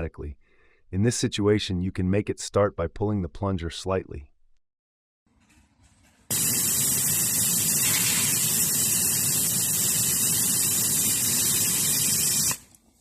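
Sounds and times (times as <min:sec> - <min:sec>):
air hissing out of tire: 0:06.3 - 0:12.7.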